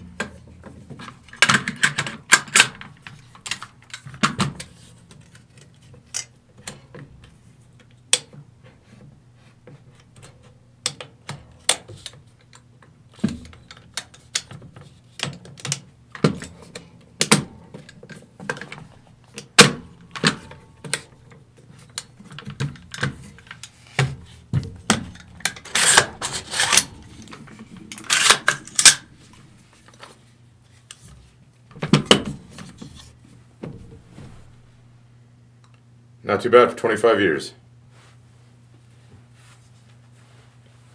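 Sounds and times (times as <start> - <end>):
metal rifle parts clicking: 24.9 - 29.1.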